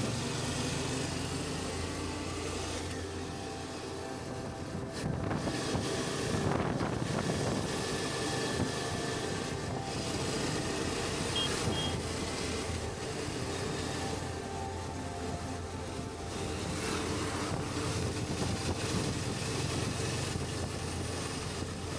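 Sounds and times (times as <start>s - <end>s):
motorcycle engine running: 0.0s - 21.9s
wind rush: 4.4s - 13.8s, 16.4s - 21.9s.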